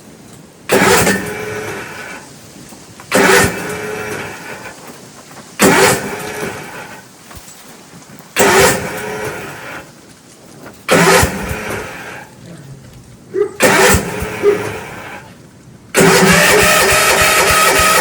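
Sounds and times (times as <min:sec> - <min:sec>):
engine firing in bursts: 0:00.7 - 0:02.4, 0:03.0 - 0:05.0, 0:05.6 - 0:07.2, 0:08.3 - 0:10.0, 0:10.8 - 0:12.4, 0:13.6 - 0:18.0.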